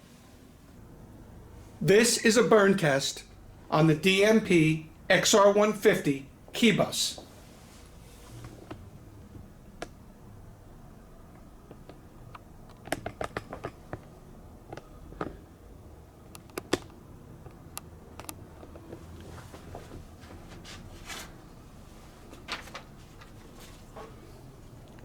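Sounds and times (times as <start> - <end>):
sharp clicks and crackles: 16.3 - 18.8.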